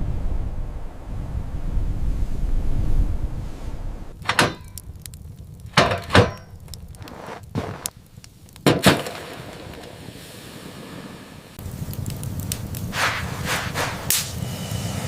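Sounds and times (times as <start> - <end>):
low wind rumble: 0.0 - 15.0
sharp knocks and thuds: 4.2 - 4.8, 5.7 - 7.9.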